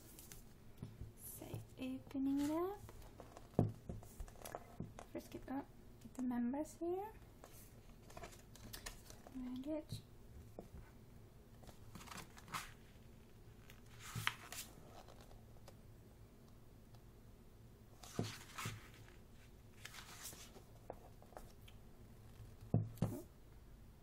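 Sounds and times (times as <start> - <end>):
book pages turning: 0.0 - 0.5, 2.3 - 5.1, 7.4 - 9.4, 11.6 - 13.0, 13.6 - 15.8, 18.0 - 21.6.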